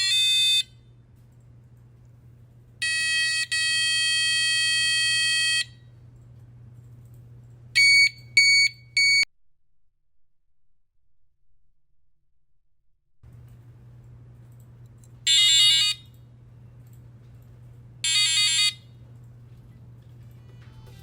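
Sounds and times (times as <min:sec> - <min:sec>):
shrill electronic alarm tone: 0:00.0 - 0:00.7, 0:02.8 - 0:05.7.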